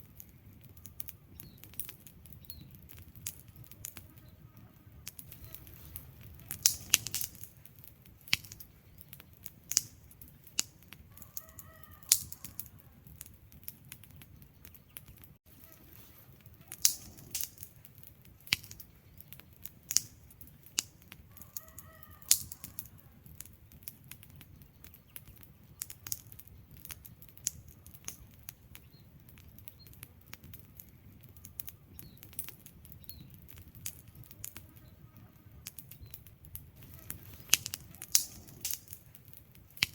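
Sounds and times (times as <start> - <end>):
logs crackling and popping: 0.0 - 39.9
low rush of flames: 0.0 - 39.9.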